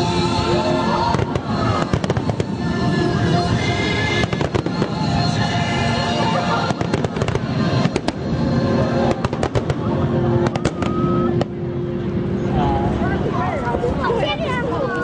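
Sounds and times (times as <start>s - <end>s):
music playing: 0.0s - 14.0s
fireworks banging and crackling: 0.9s - 11.6s.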